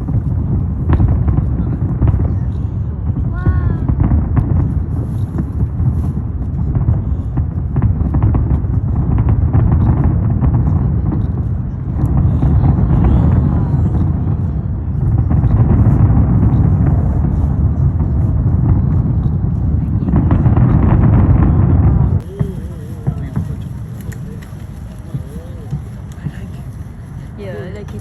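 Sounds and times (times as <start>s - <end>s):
fireworks bursts rumbling: 0.0s - 28.0s
fireworks crackling: 0.0s - 28.0s.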